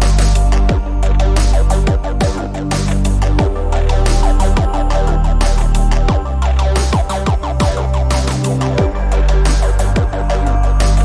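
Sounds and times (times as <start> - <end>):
electronic dub music: 0.0 - 11.0.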